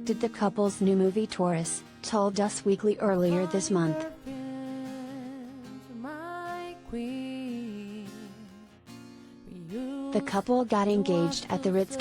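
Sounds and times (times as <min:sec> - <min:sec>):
background music: 0:00.0 - 0:06.0, 0:09.8 - 0:12.0.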